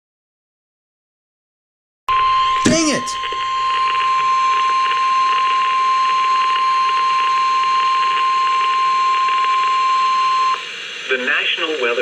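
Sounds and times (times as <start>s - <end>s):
steady alarm tone: 2.1s - 10.6s
radio hiss: 11.0s - 12.0s.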